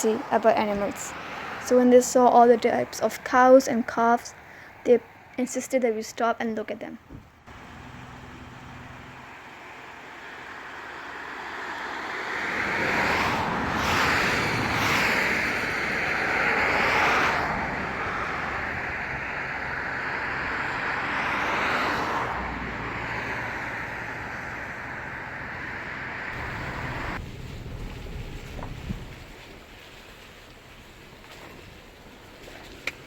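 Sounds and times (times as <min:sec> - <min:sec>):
tyre hiss on wet road: 0:26.3 - 0:33.0.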